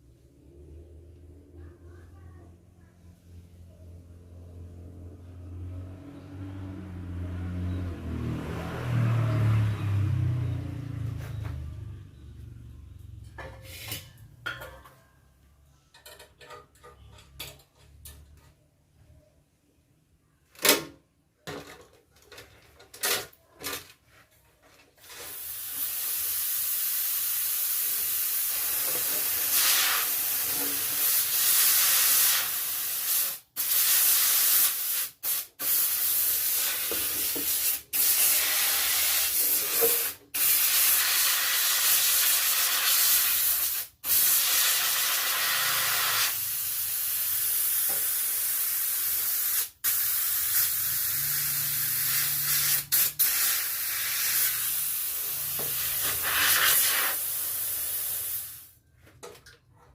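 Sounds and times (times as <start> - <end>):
pressurised gas hissing: 25.3 - 58.7.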